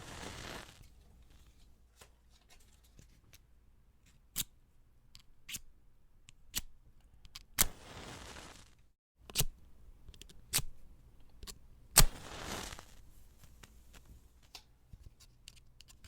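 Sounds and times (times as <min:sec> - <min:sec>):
match head flaring hiss: 0:00.0 - 0:00.8, 0:07.6 - 0:08.8, 0:12.0 - 0:13.0.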